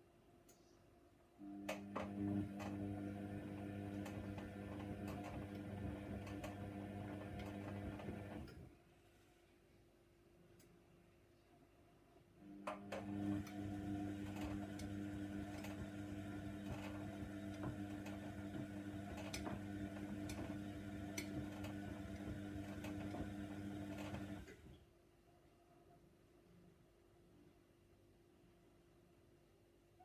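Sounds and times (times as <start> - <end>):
washer dryer humming: 1.6 - 8.7, 12.6 - 24.7.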